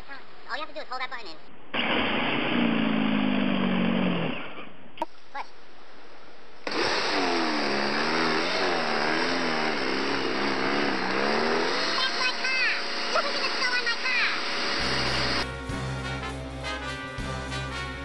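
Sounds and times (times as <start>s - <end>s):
electric snow blower motor hum: 1.9s - 4.3s, 6.6s - 15.5s.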